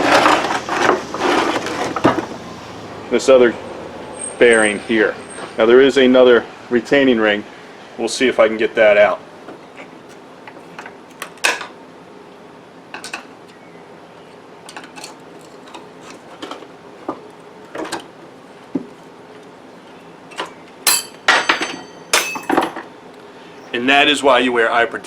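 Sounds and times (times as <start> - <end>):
metal ring clattering: 20.9 - 22.8.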